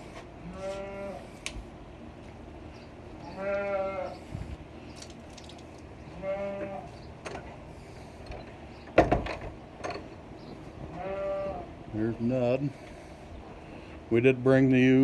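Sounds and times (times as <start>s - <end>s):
sheep bleating: 0.4s - 1.2s, 3.2s - 4.2s, 6.2s - 6.9s, 10.9s - 11.7s.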